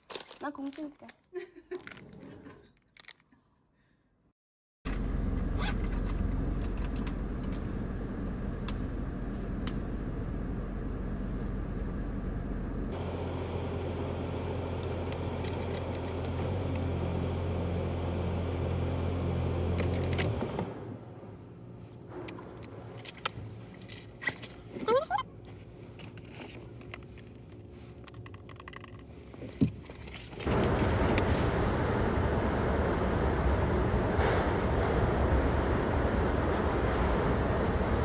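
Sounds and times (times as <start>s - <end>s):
vehicle rumble from inside: 4.9s - 21.9s, 30.4s - 38.0s.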